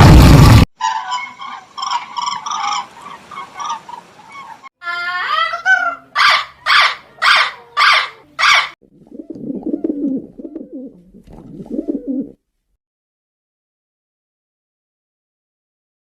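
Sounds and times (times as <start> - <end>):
loud harsh animal calls: 0.8 - 8.8
low murmuring cooing: 9.0 - 12.4.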